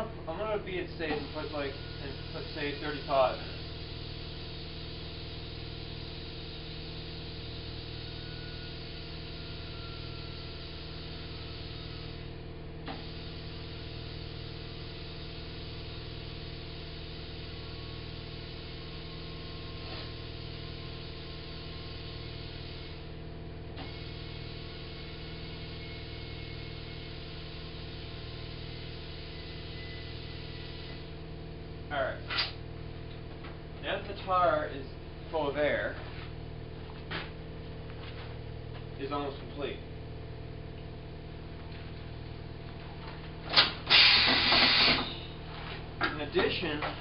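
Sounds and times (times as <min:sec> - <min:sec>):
compressor hum: 0:00.0 - 0:47.0
air hissing into tire: 0:01.1 - 0:12.3, 0:12.9 - 0:23.0, 0:23.8 - 0:26.4, 0:43.6 - 0:45.3.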